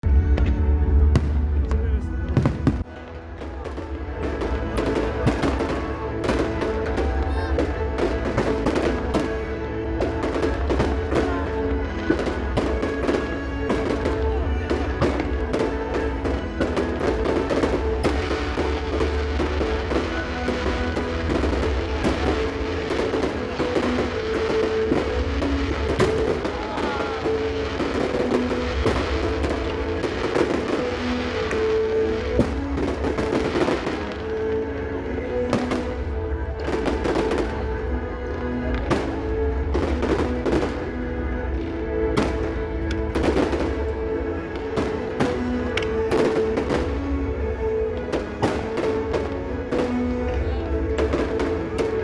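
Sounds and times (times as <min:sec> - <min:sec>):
fireworks bursting: 0:00.0 - 0:52.0
music with drums: 0:12.0 - 0:30.8.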